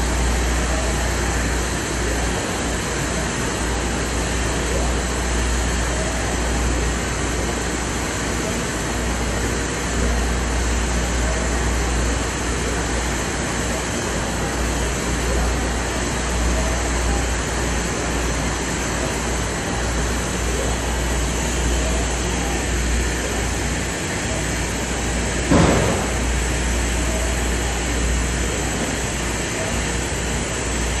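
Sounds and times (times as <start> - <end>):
printer machine noise and hum: 0.0 - 31.0
sharp knock: 25.5 - 26.3.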